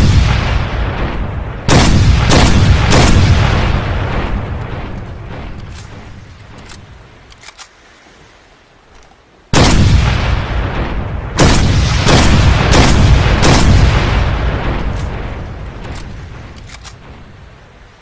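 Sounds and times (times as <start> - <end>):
rifle shots with echo: 0.0 - 5.9, 9.6 - 15.2
faint clicks: 4.5 - 7.8, 8.8 - 9.2, 14.9 - 17.2.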